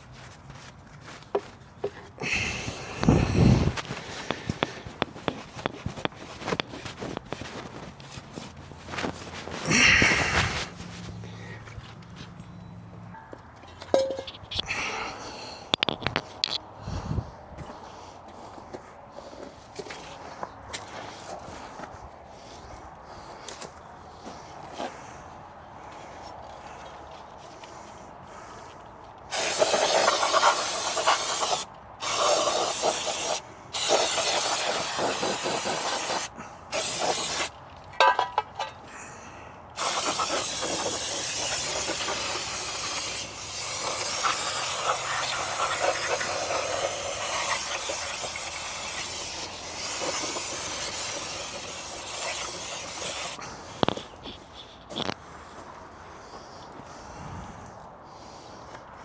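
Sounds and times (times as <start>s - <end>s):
pressurised cleaning spray hissing: 29.3s - 37.5s, 39.8s - 53.4s.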